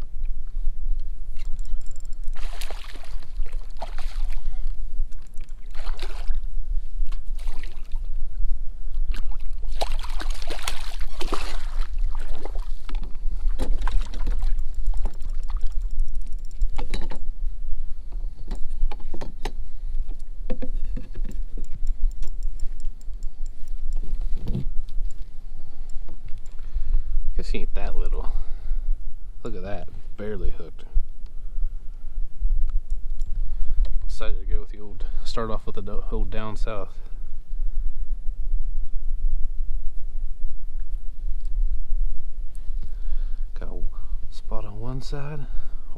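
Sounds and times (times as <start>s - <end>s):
water splashing: 2.3s - 6.5s, 7.3s - 8.1s, 9.1s - 15.8s.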